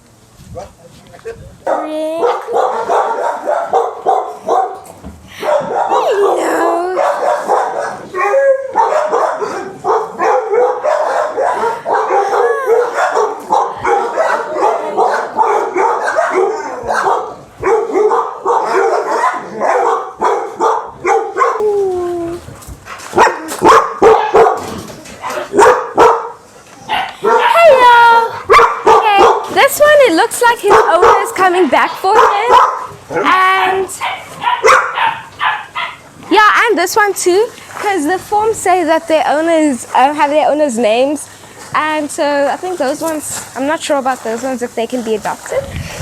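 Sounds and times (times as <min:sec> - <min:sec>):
many dogs barking: 0:01.6 - 0:21.7, 0:23.0 - 0:36.2.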